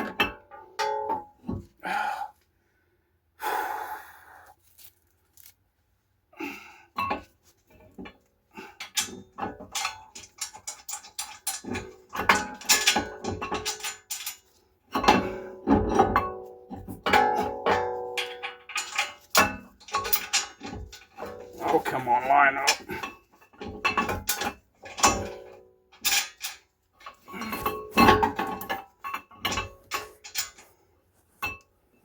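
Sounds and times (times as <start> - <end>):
metal parts knocking and ringing: 8.9 - 14.4, 15.0 - 30.6.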